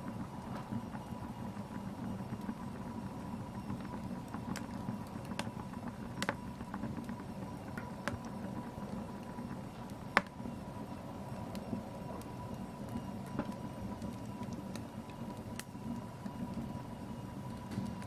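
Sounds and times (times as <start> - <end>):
wood fire crackling: 0.0 - 18.0
sharp pops of burning wood: 10.1 - 10.4.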